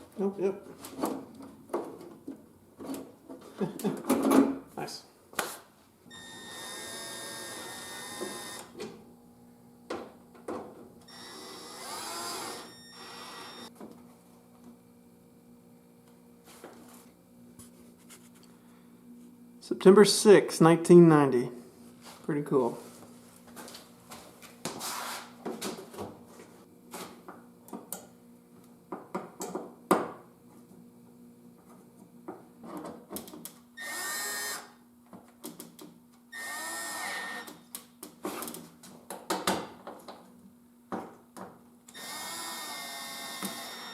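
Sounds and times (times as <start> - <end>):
power drill motor whine: 6.1 - 8.8, 11.1 - 13.7, 33.8 - 34.8, 36.3 - 37.5, 41.9 - 43.9.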